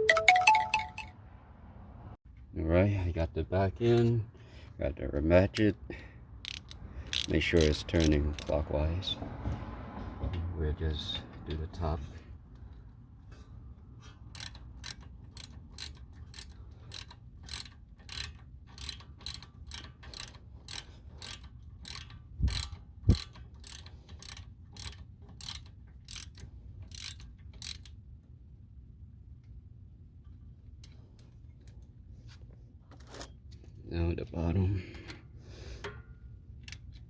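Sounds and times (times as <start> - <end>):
socket ratchet clicking: 6.4 - 8.5, 14.0 - 28.0, 35.8 - 37.0.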